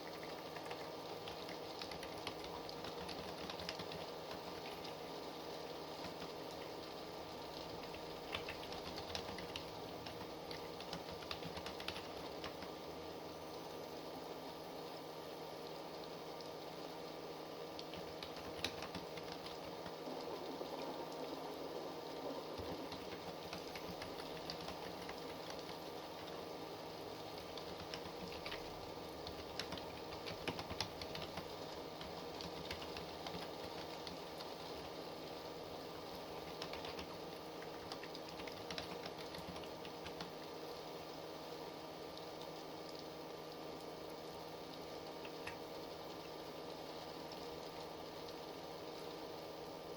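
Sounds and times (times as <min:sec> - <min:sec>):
typing on computer keyboard: 0:00.0 - 0:05.1, 0:05.9 - 0:06.8, 0:07.5 - 0:12.8, 0:17.8 - 0:20.0, 0:22.6 - 0:26.5, 0:27.2 - 0:34.9, 0:36.1 - 0:40.4
low background hiss: 0:00.0 - 0:49.9
low background hum: 0:00.0 - 0:49.9.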